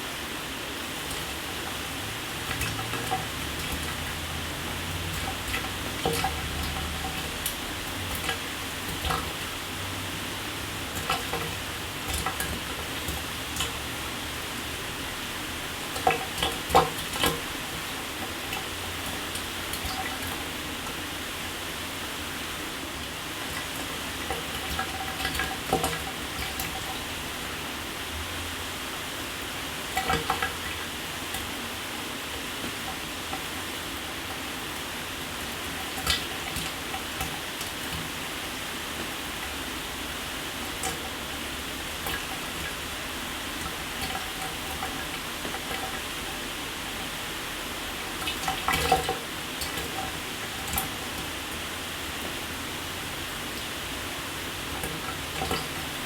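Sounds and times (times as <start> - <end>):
shower water hissing: 0.1 - 10.9
water splashes: 0.9 - 27.6, 29.8 - 56.0.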